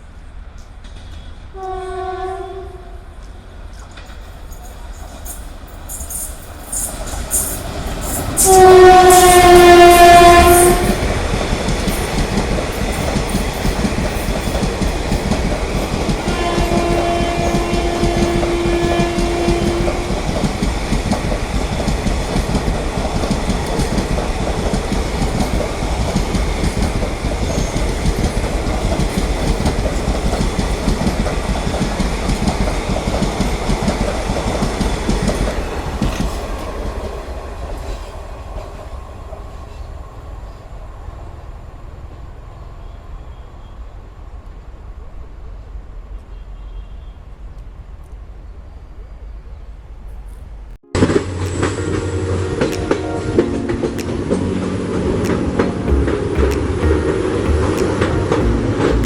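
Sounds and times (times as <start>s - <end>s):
train wheels rumbling on track: 0.0s - 48.3s
train horn blast: 1.5s - 3.1s, 8.4s - 11.1s, 16.3s - 20.3s.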